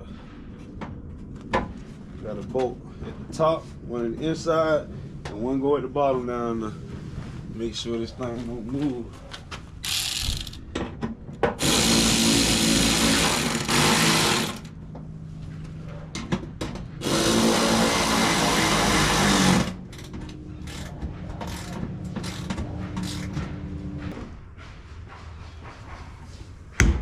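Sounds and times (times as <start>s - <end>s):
power drill driving bolts: 9.8s - 10.6s, 11.6s - 14.7s, 17.0s - 20.1s.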